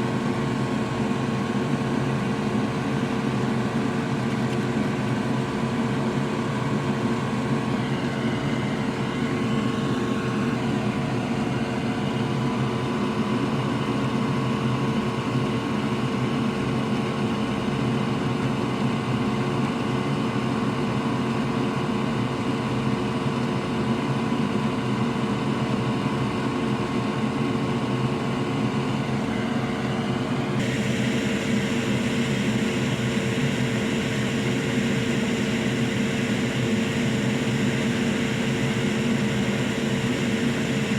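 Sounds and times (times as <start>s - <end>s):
small electric fan whirring: 29.1s - 40.9s.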